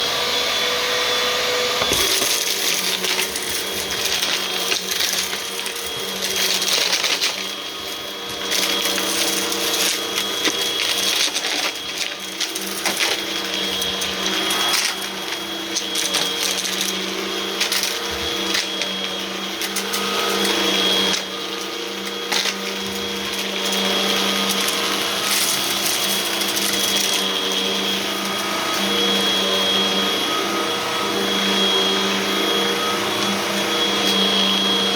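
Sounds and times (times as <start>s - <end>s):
vacuum cleaner running: 0.0s - 34.9s.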